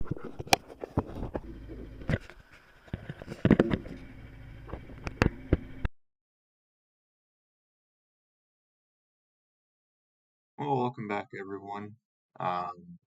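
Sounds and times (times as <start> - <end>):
faint low hum: 0.7 - 5.9
knocks and clatter: 2.9 - 5.8.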